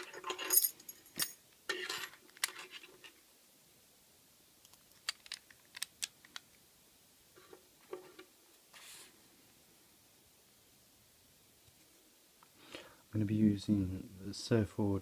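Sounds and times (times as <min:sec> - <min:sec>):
lock-picking tools clicking: 0:04.7 - 0:06.5.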